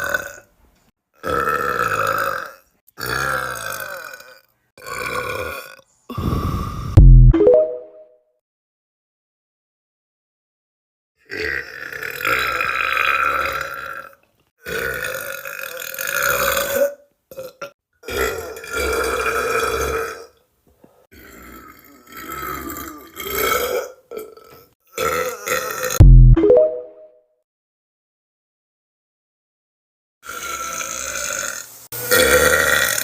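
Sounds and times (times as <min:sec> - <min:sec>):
person burping: 0:17.3 - 0:19.9, 0:21.1 - 0:26.6.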